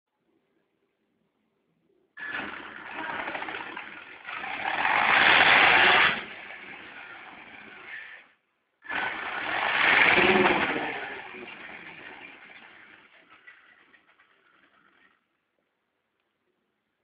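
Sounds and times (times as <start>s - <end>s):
electric motor grinding whirr: 2.2s - 15.2s.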